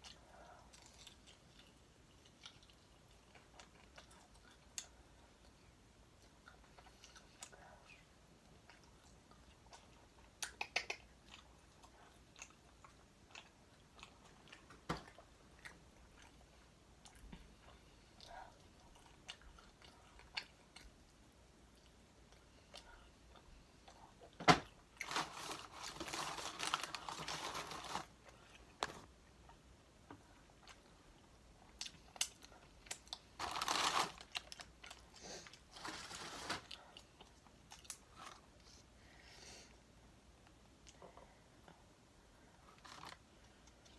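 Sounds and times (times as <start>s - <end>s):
chewing crispy fried chicken: 0.0s - 24.3s
small mouth clicks: 10.4s - 11.1s.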